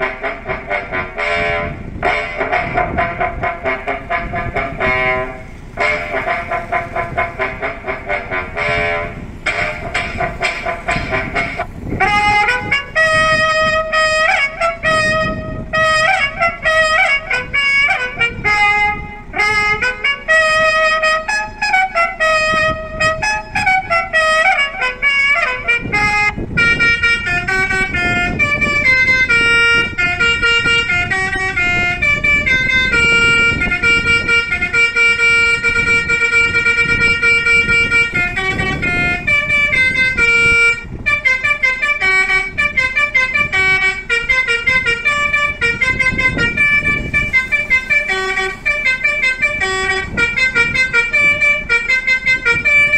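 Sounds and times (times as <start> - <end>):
multi-tone melody horn playing a tune: 0.0 - 52.9.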